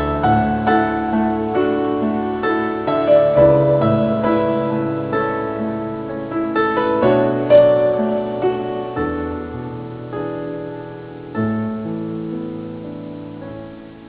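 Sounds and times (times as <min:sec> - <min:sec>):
slow gentle piano music: 0:00.0 - 0:14.0.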